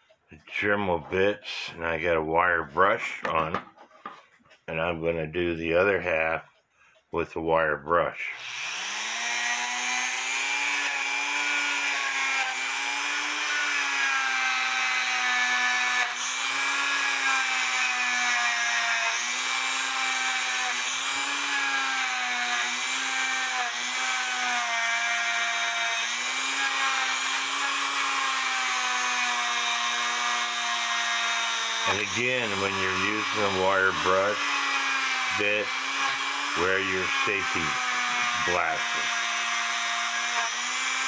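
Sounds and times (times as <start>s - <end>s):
rotary tool motor whine: 8.3s - 41.0s.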